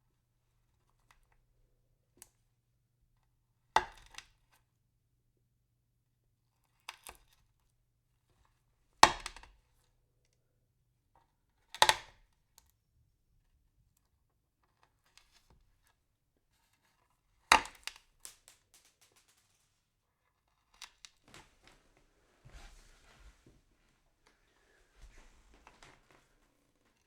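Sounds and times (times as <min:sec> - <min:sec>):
pills being crushed: 0:18.2 - 0:19.7.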